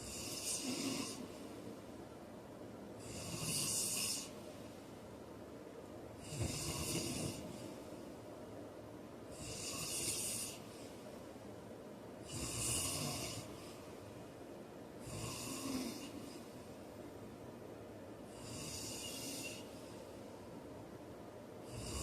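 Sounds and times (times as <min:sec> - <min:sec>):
man snoring: 0:00.0 - 0:01.3, 0:03.0 - 0:04.3, 0:06.2 - 0:07.5, 0:09.3 - 0:10.6, 0:12.3 - 0:13.6, 0:15.0 - 0:16.4, 0:18.3 - 0:19.7, 0:21.6 - 0:22.0.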